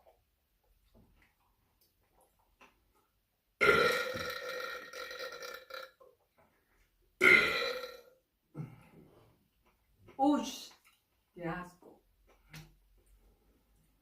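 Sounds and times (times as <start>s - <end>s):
person burping: 3.6s - 6.0s, 7.2s - 8.9s.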